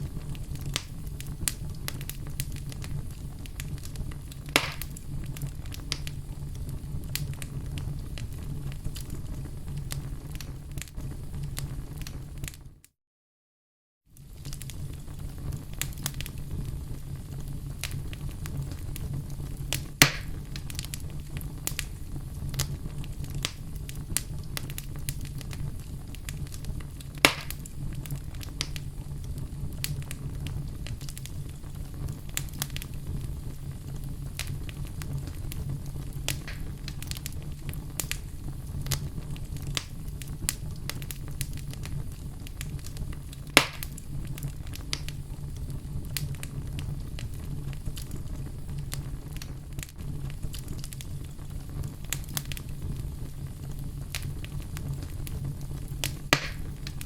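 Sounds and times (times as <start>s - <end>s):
fire crackling: 0.0s - 12.8s, 14.1s - 57.0s
low rumble of fire: 0.0s - 12.9s, 14.0s - 57.0s
loud sharp pops: 4.5s - 5.0s, 19.8s - 20.4s, 27.2s - 27.7s, 36.3s - 36.8s, 43.6s - 44.0s, 56.0s - 57.0s.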